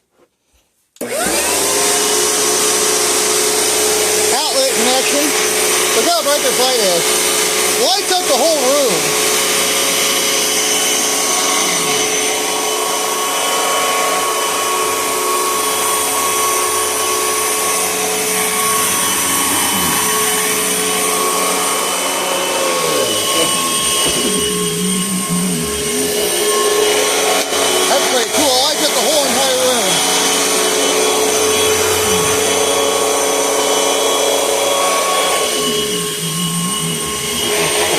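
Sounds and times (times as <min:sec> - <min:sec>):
vacuum cleaner running: 0:01.0 - 0:37.9.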